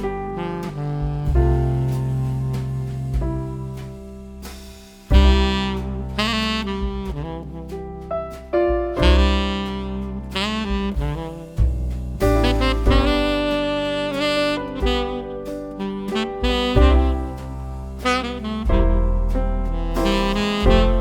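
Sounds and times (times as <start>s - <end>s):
jazz with saxophone lead: 0.0s - 21.0s.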